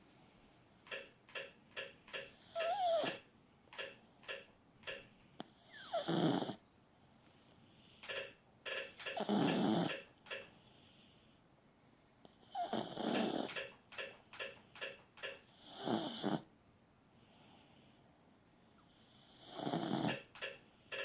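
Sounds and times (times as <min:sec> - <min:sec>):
dog snoring: 0:02.2 - 0:03.2, 0:05.4 - 0:06.6, 0:08.8 - 0:10.1, 0:12.3 - 0:13.7, 0:15.4 - 0:16.5, 0:18.9 - 0:20.3.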